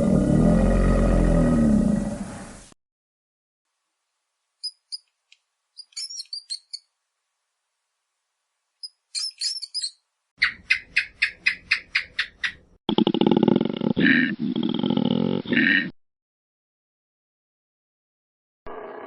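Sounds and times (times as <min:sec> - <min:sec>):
small bird chirping: 0:04.6 - 0:06.9, 0:08.8 - 0:12.8.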